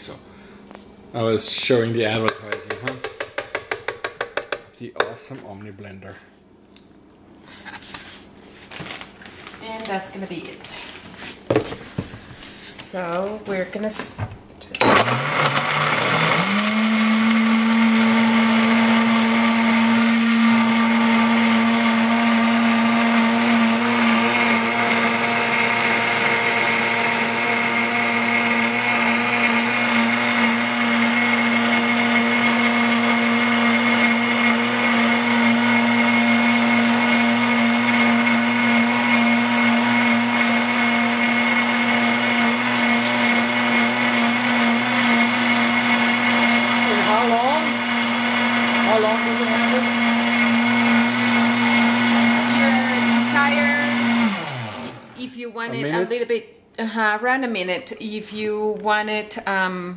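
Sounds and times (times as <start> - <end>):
blender motor running: 14.8 - 56.0.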